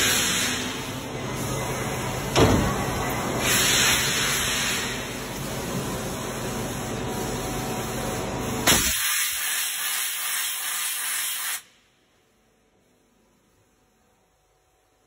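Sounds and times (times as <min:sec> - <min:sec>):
machine hissing spray: 0:00.0 - 0:02.0, 0:02.7 - 0:11.8.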